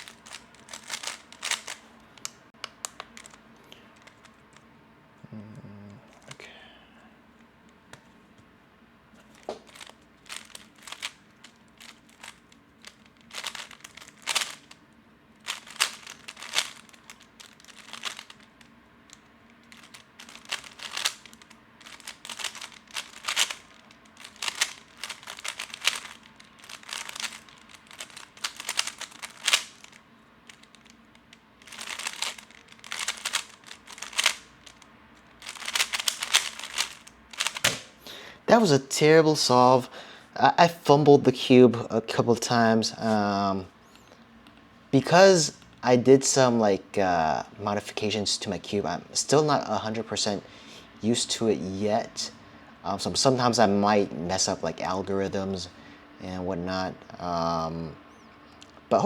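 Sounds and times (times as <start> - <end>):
puzzle cube clicking: 0.0 - 3.4, 9.3 - 14.8, 15.4 - 34.8, 35.4 - 38.0.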